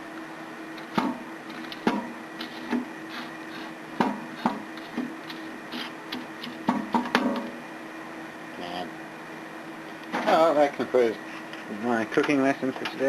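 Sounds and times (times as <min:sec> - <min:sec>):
microwave oven humming: 0:00.0 - 0:13.0.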